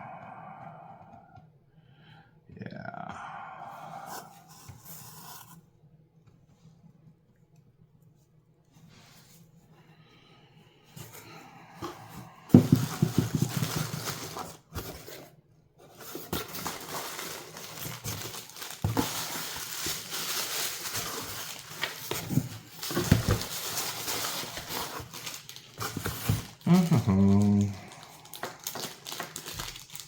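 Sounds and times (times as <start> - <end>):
packing material crinkling: 12.6 - 15.1, 16.0 - 30.0.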